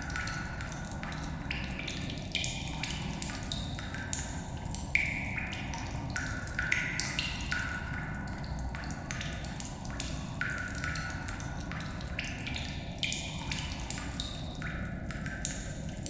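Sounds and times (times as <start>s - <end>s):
water drips plinking in cave: 0.0s - 16.0s.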